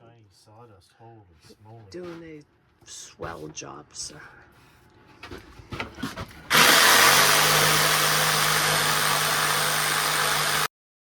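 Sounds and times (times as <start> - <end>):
vacuum cleaner running: 6.5 - 10.7.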